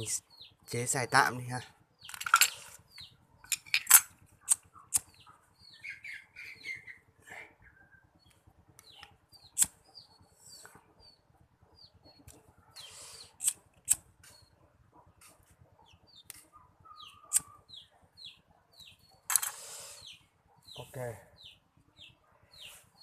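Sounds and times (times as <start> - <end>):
small parts and tools clicking: 2.0 - 5.1, 19.3 - 19.6
faint bird chirps: 4.6 - 13.5, 15.7 - 23.0.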